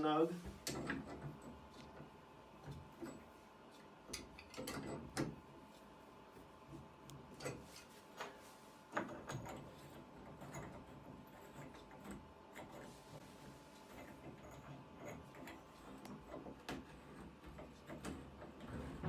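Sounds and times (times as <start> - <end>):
metal parts clicking and knocking: 0.6 - 3.3, 4.0 - 5.4.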